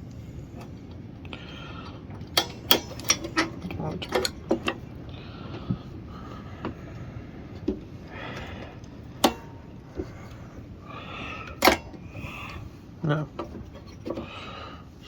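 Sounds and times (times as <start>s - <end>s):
soft breaths: 0.0s - 2.2s, 4.9s - 13.0s, 13.8s - 15.0s
small metal parts clicking: 2.3s - 4.8s.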